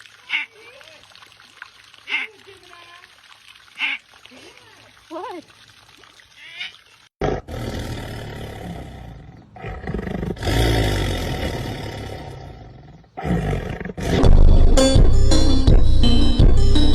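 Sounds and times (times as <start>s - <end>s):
big cat roaring: 7.2s - 14.5s.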